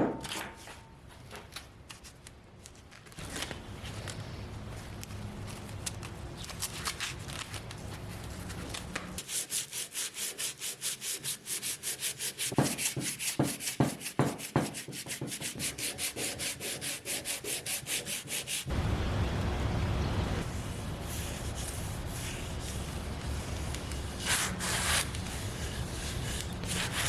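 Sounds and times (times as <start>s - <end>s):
sandpaper scrubbing wood: 9.2s - 18.7s, 20.4s - 27.0s.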